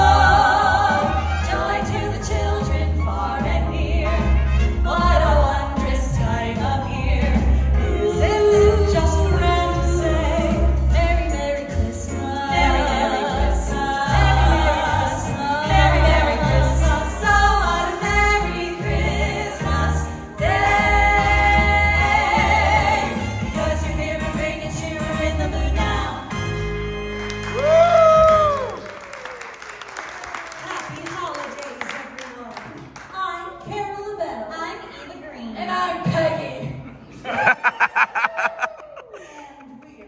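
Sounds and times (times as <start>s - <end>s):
vocal group singing in harmony: 0.0s - 26.4s.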